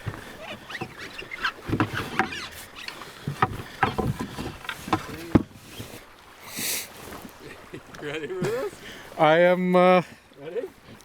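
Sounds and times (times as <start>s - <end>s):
canoe hull knocks and scrapes: 0.0s - 6.1s.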